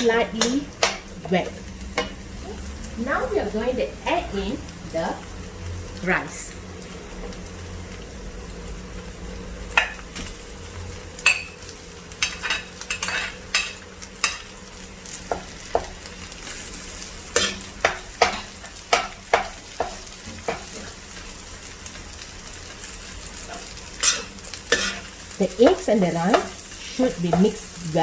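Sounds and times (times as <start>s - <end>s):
rice sizzling in hot oil: 0.0s - 28.0s
spatula scraping a pan: 12.2s - 14.4s, 23.4s - 27.1s.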